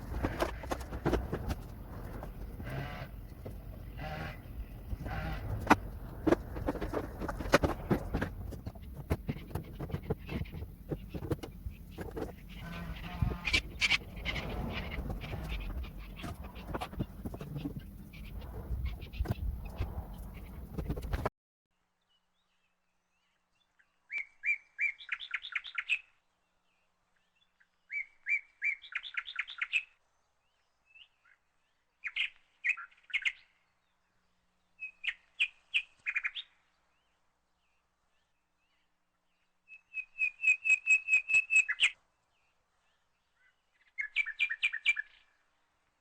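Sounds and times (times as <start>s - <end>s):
songbird chirping: 0.0s - 21.3s.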